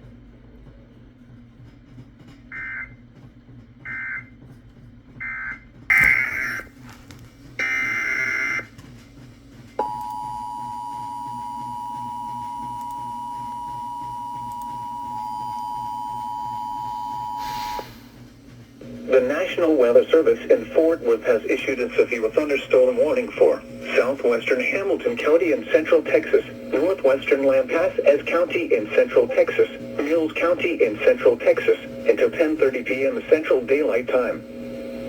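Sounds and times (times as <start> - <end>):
two-tone attention signal: 9.8 - 18.0.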